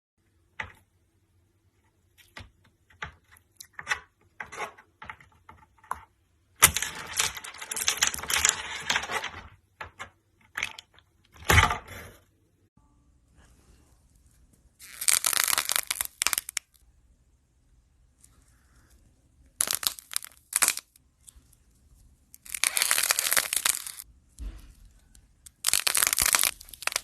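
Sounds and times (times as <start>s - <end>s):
crackling and crunching: 4.5s - 11.6s, 14.2s - 16.8s, 18.2s - 27.0s.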